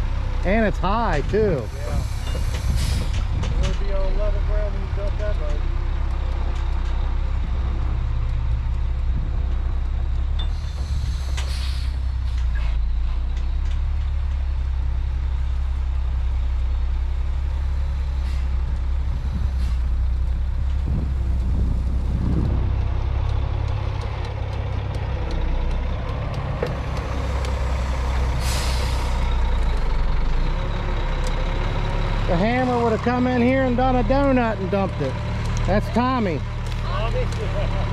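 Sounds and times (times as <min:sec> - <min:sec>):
diesel truck engine running: 0:00.0 - 0:37.9
air brakes hissing: 0:01.6 - 0:03.3, 0:10.4 - 0:13.2, 0:18.2 - 0:18.6, 0:19.5 - 0:19.9, 0:26.9 - 0:29.6.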